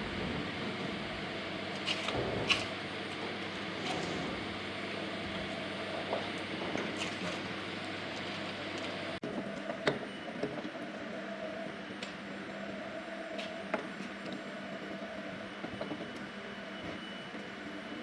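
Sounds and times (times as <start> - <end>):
milling machine humming: 0.0 - 10.3.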